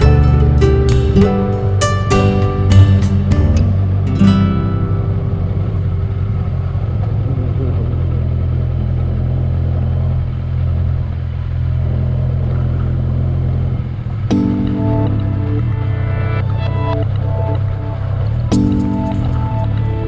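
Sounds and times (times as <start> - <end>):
guitar music: 0.0 - 7.7, 14.3 - 20.0
motorcycle engine running: 0.0 - 14.3.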